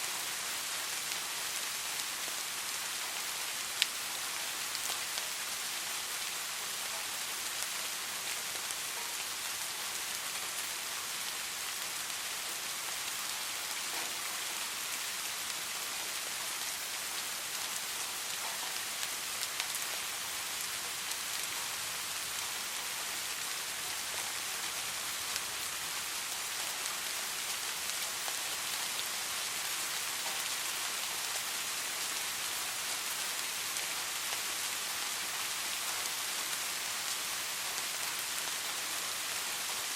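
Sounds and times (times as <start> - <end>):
soft rain hiss: 0.0 - 39.9.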